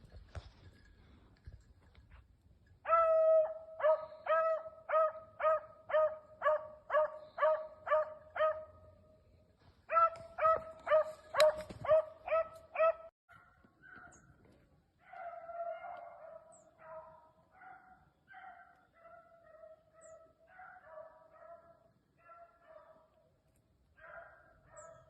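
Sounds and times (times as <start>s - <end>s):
dog barking: 2.9s - 8.8s, 9.9s - 14.2s, 15.0s - 23.2s, 24.0s - 25.0s.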